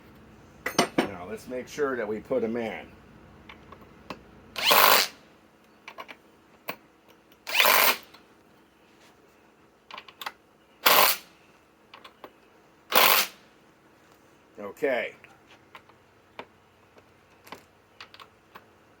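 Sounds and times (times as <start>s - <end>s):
handling knocks: 0.7s - 1.4s
cordless impact driver bursts: 4.6s - 5.2s, 7.5s - 8.1s, 10.8s - 11.3s, 12.9s - 13.4s.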